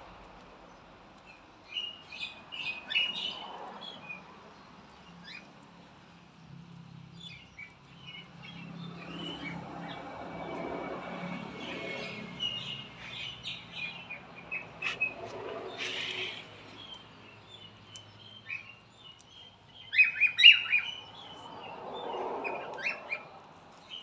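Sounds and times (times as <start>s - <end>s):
cockatiels chirping: 12.4s - 17.0s, 17.9s - 21.0s.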